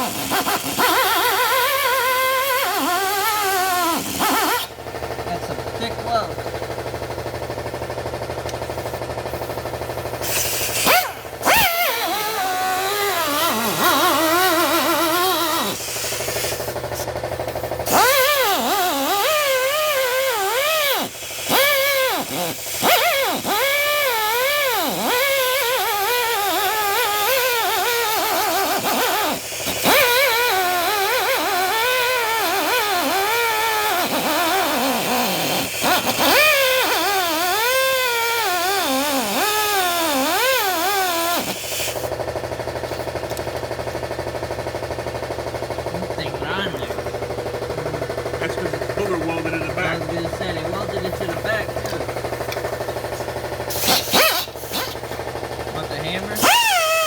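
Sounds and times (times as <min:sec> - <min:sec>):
angle grinder cutting steel: 0:00.0 - 0:04.7, 0:10.3 - 0:17.0, 0:17.8 - 0:42.1, 0:55.8 - 0:57.0.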